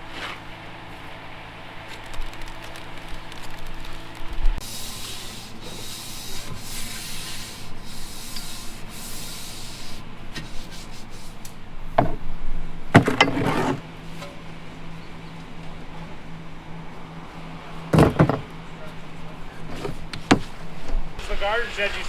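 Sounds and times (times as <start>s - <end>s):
tool scraping wet concrete: 4.6s - 11.4s, 13.1s - 13.8s.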